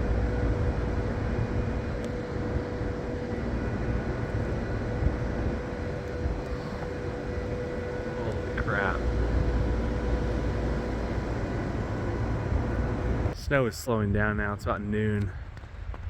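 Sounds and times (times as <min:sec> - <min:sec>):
faint steady hum: 0:00.0 - 0:16.0
gusty wind buffeting microphone: 0:00.0 - 0:16.0.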